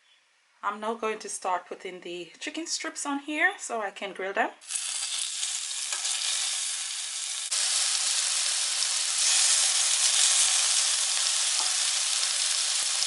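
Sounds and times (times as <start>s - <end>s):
chicken sizzling on a grill plate: 4.6s - 13.0s.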